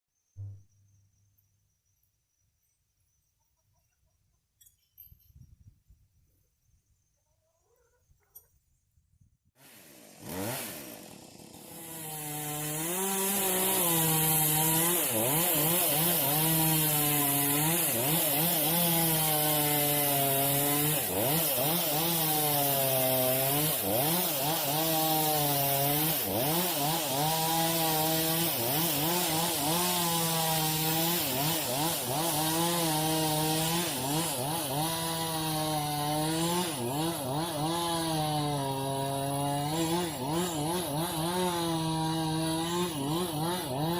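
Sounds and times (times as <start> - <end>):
chainsaw running at high revs: 9.6 - 43.9.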